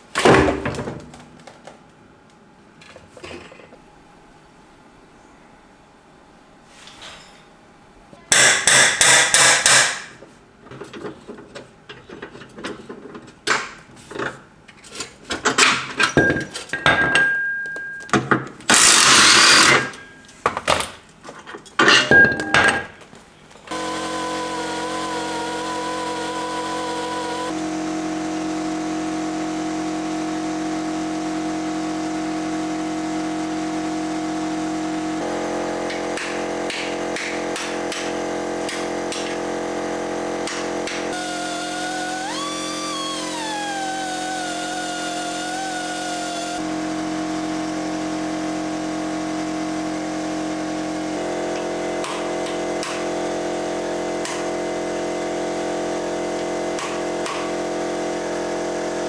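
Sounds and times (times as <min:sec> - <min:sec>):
power tool bursts: 0:18.7 - 0:20.1, 0:23.7 - 0:59.0.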